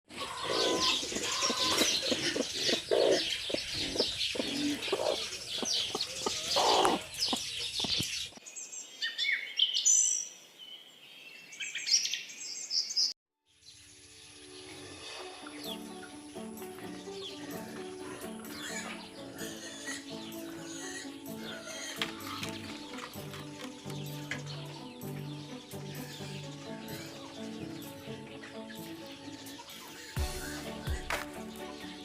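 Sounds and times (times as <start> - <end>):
chicken clucks: 0.1 - 8.1
chicks peeping: 0.1 - 8.4
background music: 0.2 - 7.0, 14.0 - 32.0.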